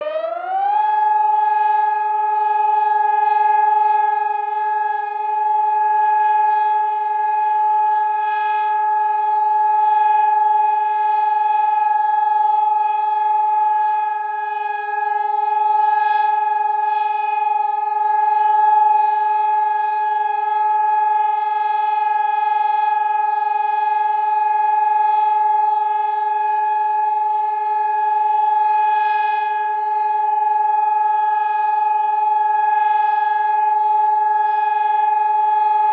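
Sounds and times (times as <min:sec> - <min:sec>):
distant siren winding up: 0:00.0 - 0:01.7
siren holding steady tone: 0:00.0 - 0:35.9.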